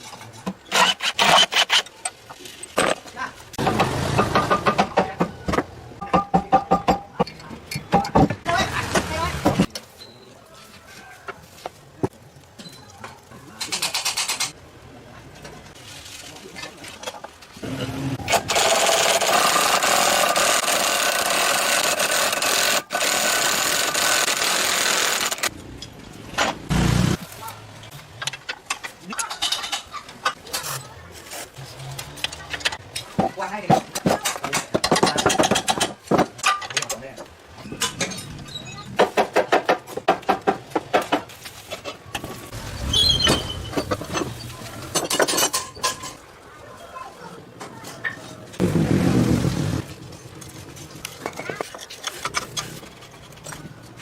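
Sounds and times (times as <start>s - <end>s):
power tool buzzing: 26.7s - 27.2s.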